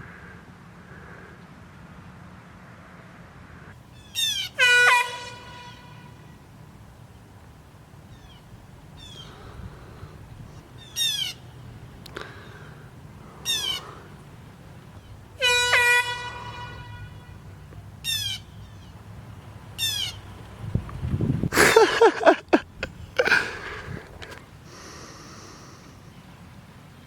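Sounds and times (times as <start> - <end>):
compressed-air horn blasts: 4.4 - 6.4, 15.4 - 17.6.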